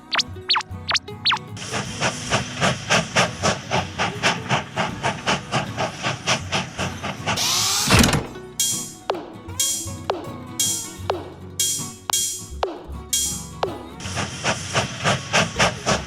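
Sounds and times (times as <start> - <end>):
steam locomotive chuffing: 0.0 - 9.9, 13.2 - 16.0
loud steam hiss: 1.6 - 8.1, 14.1 - 16.0.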